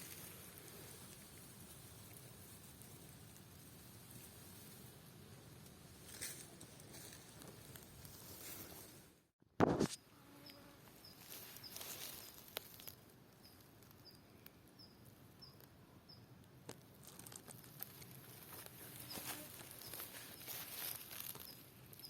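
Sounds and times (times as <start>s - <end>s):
faint crackling and rustling: 0.0s - 9.9s, 10.5s - 14.1s, 16.4s - 22.0s
small bird chirping: 10.4s - 16.3s, 18.8s - 22.0s.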